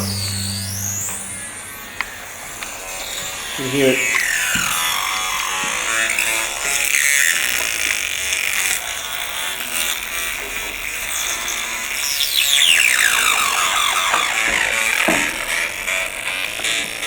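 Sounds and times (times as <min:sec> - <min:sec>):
electronic music: 0:00.0 - 0:02.2
falling pitch sweeps: 0:00.0 - 0:04.2.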